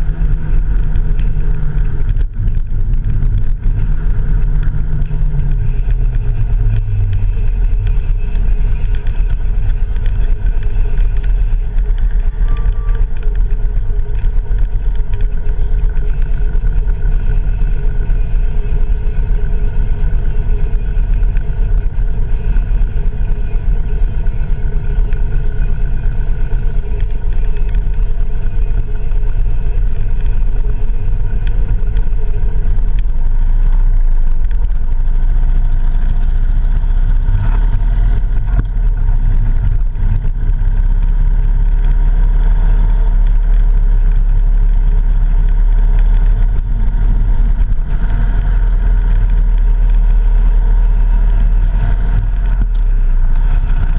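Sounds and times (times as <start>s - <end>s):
motorcycle engine running: 0.0s - 53.9s
wind and road noise: 0.0s - 53.9s.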